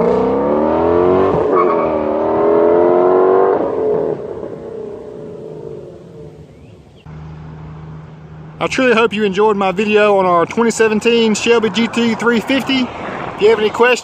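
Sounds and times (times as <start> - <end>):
car engine accelerating hard: 0.0 - 9.0.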